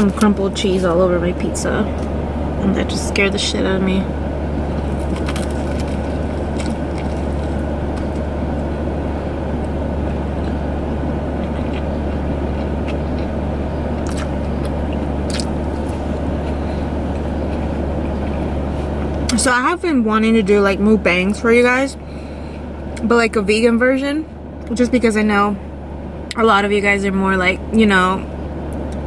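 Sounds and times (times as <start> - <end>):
low hum inside car cabin: 0.0 - 29.0
crunchy clicks of eating pizza: 4.7 - 8.7, 11.4 - 19.4.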